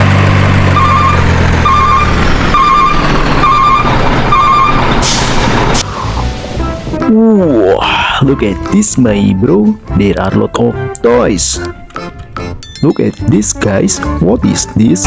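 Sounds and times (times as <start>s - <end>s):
truck engine running: 0.0s - 10.6s
back-up alarm beeping: 0.8s - 5.0s.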